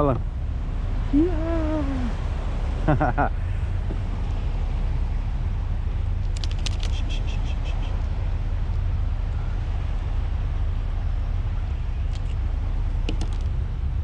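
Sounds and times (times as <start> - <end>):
wind buffeting microphone: 0.0 - 14.0
sharp clicks: 6.2 - 7.1.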